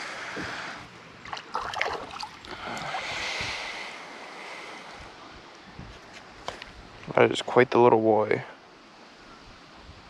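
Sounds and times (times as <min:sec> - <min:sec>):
water splashing and sloshing: 0:00.3 - 0:04.9.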